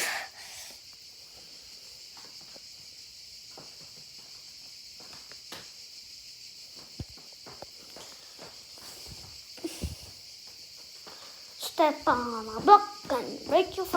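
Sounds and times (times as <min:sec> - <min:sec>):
high-pitched background hiss: 0:00.0 - 0:13.9
footsteps on pavement: 0:03.5 - 0:05.7, 0:11.8 - 0:13.9.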